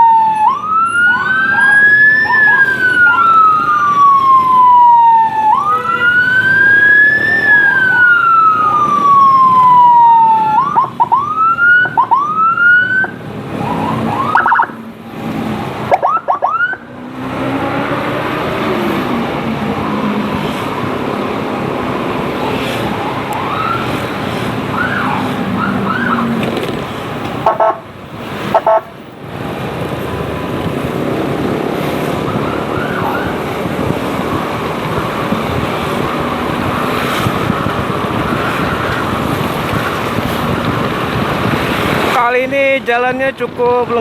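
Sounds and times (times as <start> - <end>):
emergency siren sweeping: 0.0 - 42.1
road and wind noise: 0.0 - 44.0.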